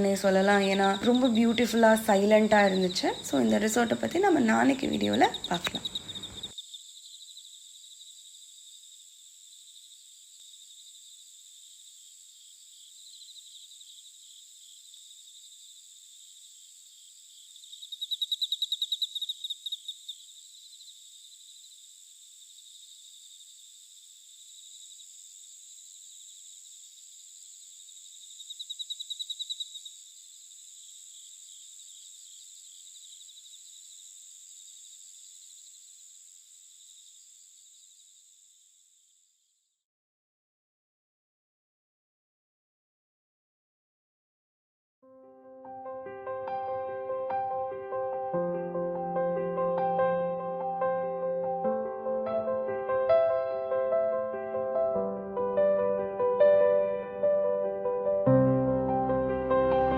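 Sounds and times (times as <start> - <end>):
insects trilling: 0.0 - 39.8.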